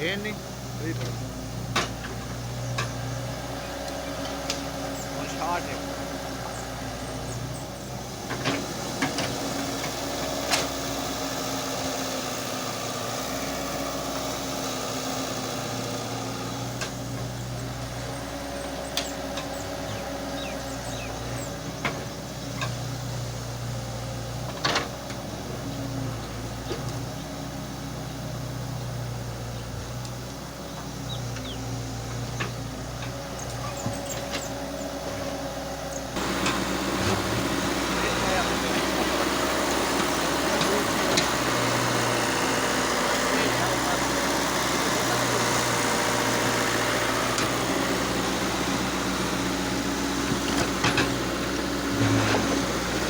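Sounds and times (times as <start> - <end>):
heavy machine engine running: 0.0 - 53.0.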